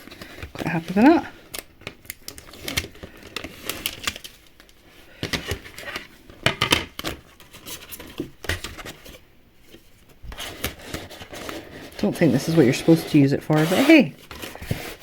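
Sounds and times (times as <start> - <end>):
scratchy rustles: 10.3 - 15.0.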